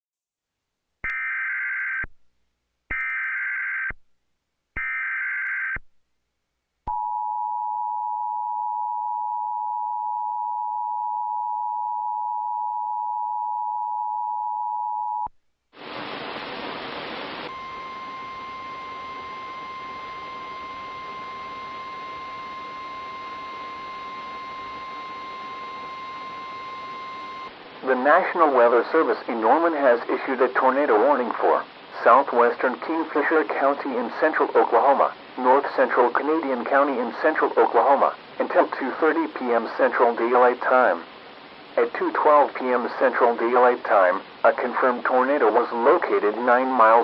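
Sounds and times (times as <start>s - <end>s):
steady hiss: 15.8s - 47.0s
steady single tone: 17.4s - 27.5s
two-tone attention signal: 17.5s - 27.5s.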